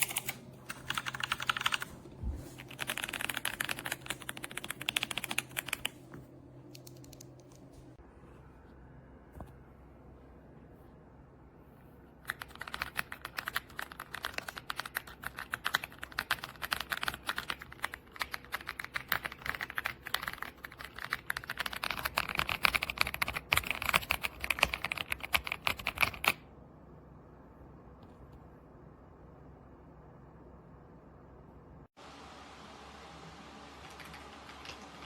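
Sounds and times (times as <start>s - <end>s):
fast typing on mechanical keyboard: 0.0s - 1.9s, 2.6s - 6.0s, 6.7s - 7.6s, 12.3s - 26.4s, 33.9s - 34.9s.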